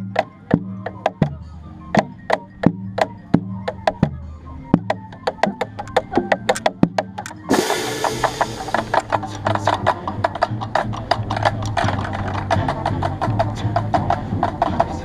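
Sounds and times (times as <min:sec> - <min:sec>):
rapid clicking percussion: 0:05.2 - 0:15.0
cymbal crash: 0:07.5 - 0:09.2
drum hits: 0:07.5 - 0:09.3
marching band playing: 0:07.5 - 0:09.3.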